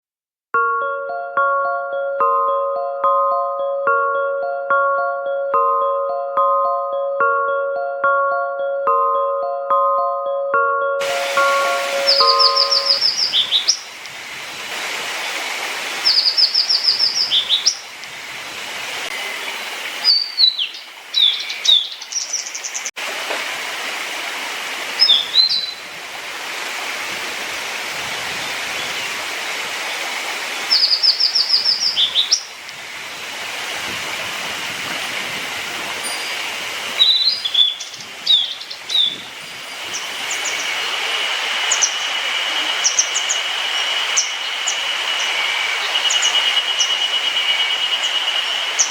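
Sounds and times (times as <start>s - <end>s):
rushing background like water: 0.6s - 48.9s
small songbird singing: 11.4s - 13.9s, 16.1s - 17.9s, 19.4s - 22.9s, 25.0s - 25.8s, 30.7s - 32.5s, 37.0s - 40.8s, 41.6s - 48.9s.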